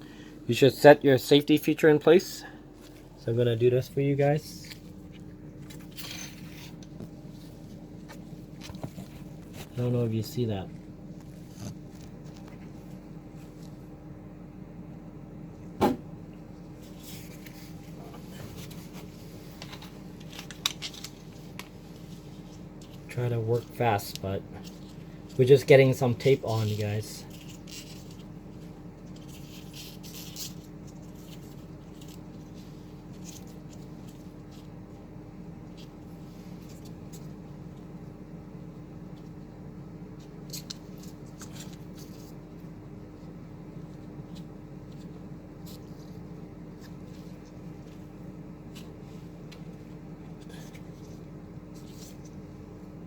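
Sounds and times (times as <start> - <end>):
steady low hum: 0.0 - 53.0
tape scratching and rustling: 11.2 - 12.7, 16.9 - 34.8.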